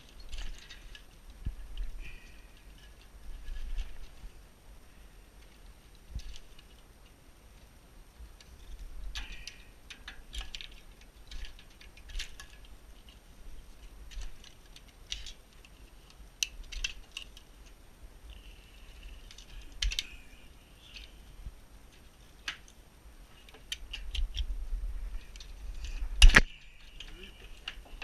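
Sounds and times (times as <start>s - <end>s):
wire connectors clicking and scraping: 0.0s - 28.0s.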